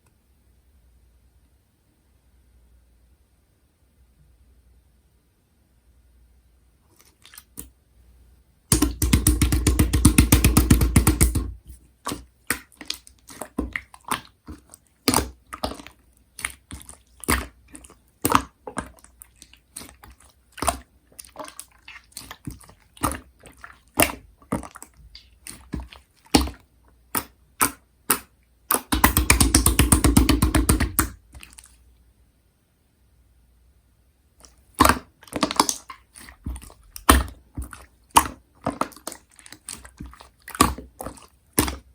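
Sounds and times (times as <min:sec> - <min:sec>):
slime wet clicks and pops: 0:08.7 - 0:11.5, 0:25.5 - 0:31.6
slime crackling: 0:08.7 - 0:31.8, 0:34.8 - 0:41.9.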